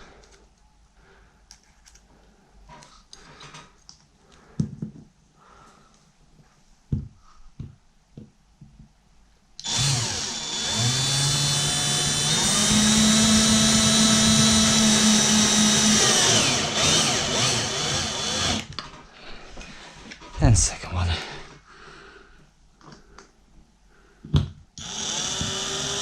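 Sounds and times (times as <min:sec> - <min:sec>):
power drill driving a screw: 0:09.6 - 0:18.8, 0:24.8 - 0:26.0.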